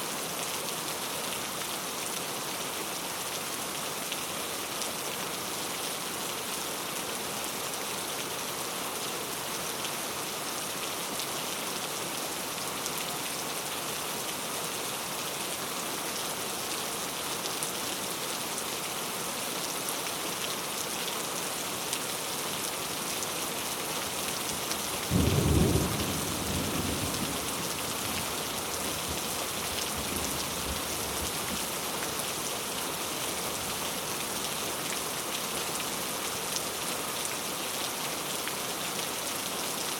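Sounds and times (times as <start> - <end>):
steady rain falling: 0.0 - 39.9
low thunder clap rumbling: 25.1 - 27.7.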